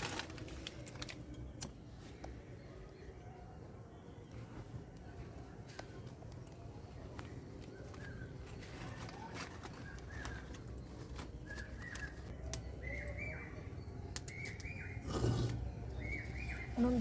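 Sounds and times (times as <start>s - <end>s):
small birds chirping: 0.8s - 17.0s.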